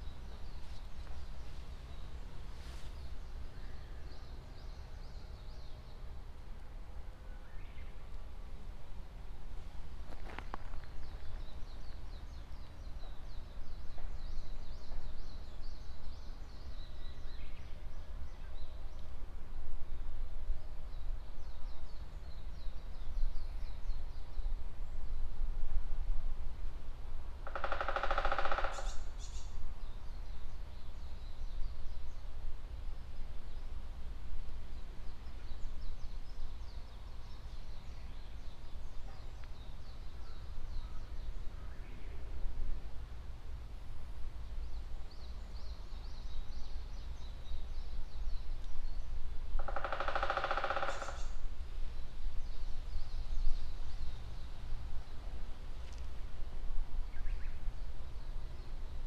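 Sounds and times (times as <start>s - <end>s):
songbirds chirping: 0.0s - 19.3s, 27.4s - 59.0s
woodpecker drumming on tree: 27.4s - 29.2s, 49.6s - 51.5s.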